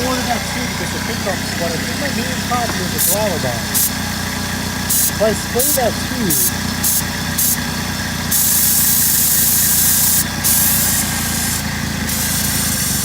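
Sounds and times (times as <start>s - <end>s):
car engine idling: 0.0s - 13.0s
aerosol can spraying: 2.6s - 3.9s, 4.9s - 7.6s, 8.3s - 13.0s.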